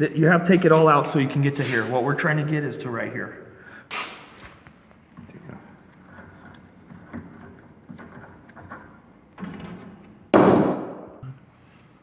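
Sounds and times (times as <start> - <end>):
loud metallic clank: 10.4 - 11.2.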